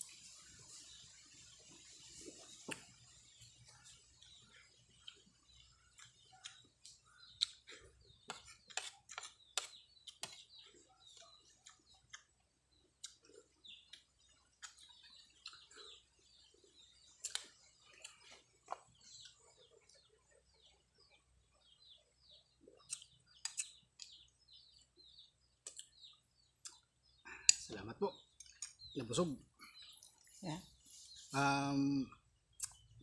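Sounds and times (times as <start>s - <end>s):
chewing with mouth clicks: 1.7s - 20.1s, 22.7s - 24.3s, 25.6s - 27.7s, 28.3s - 28.9s.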